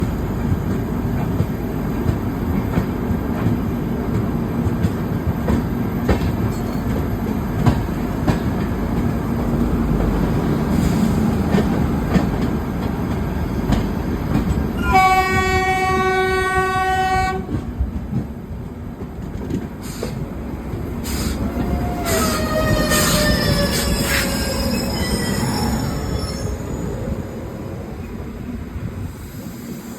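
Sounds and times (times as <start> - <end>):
train coaches rumbling: 0.0 - 29.9
locomotive air horn: 14.8 - 17.6
wheel squeal: 22.1 - 26.9.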